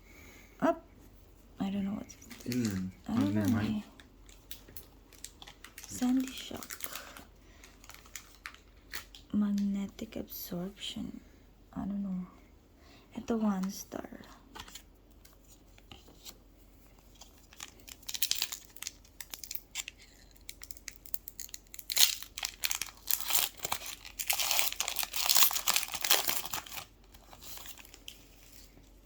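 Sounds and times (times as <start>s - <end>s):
foil wrapper tearing and crinkling: 4.3s - 9.2s, 17.1s - 28.7s.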